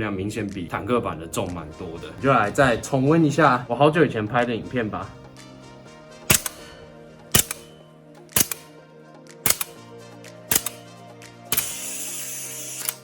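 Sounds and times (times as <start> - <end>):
background music: 0.0 - 13.0
airsoft rifle shots: 6.3 - 7.8, 8.4 - 8.7, 9.5 - 9.8, 10.5 - 10.8, 11.5 - 12.0.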